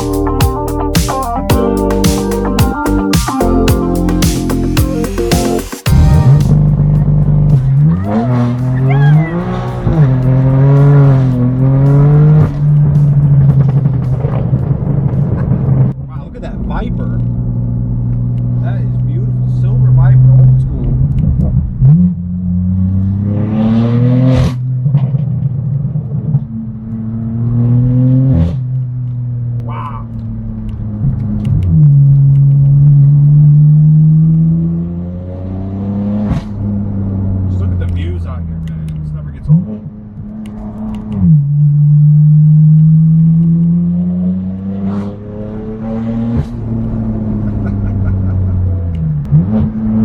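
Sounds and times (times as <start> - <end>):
sharp exhaust crack at upshift: 0.0 - 16.1
car engine accelerating: 0.0 - 50.0.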